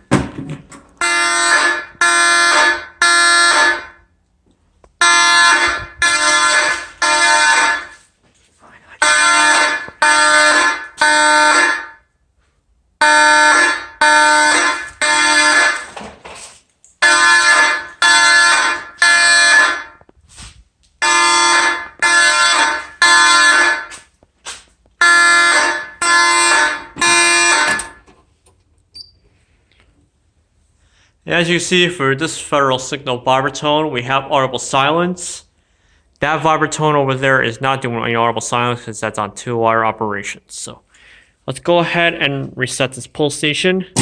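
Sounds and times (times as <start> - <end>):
fire alarm horn blasts: 1.0 - 4.2, 5.0 - 8.1, 9.0 - 12.2, 13.0 - 16.0, 17.0 - 20.1, 21.0 - 24.1, 25.0 - 28.0.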